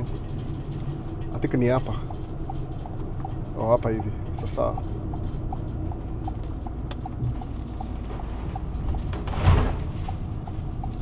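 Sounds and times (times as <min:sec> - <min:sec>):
truck engine rumble: 0:00.0 - 0:11.0
turn signal clicking: 0:02.0 - 0:08.0, 0:10.1 - 0:11.0.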